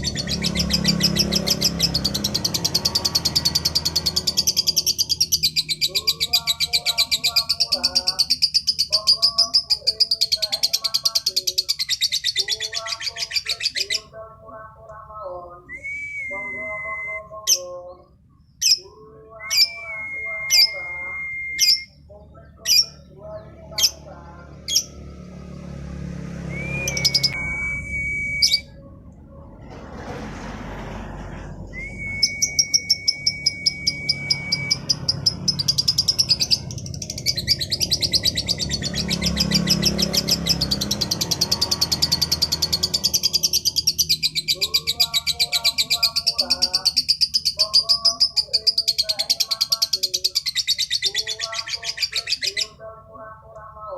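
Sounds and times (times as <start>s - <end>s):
lovebird trilling chatter: 0.0s - 14.0s, 32.3s - 52.7s
bird chirps: 0.0s - 14.1s, 26.5s - 28.9s, 31.7s - 52.8s
long whistled bird notes: 26.5s - 28.8s, 31.7s - 34.9s.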